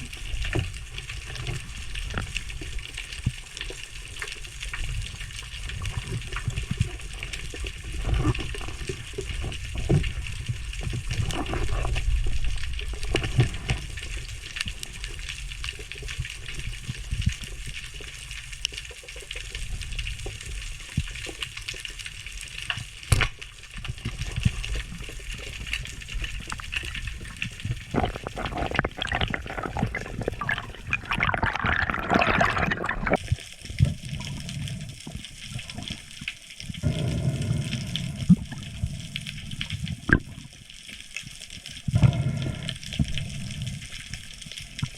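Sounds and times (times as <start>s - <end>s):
water sloshing and rushing: 0.0s - 21.6s, 22.8s - 44.9s
scattered crackles: 0.0s - 44.9s.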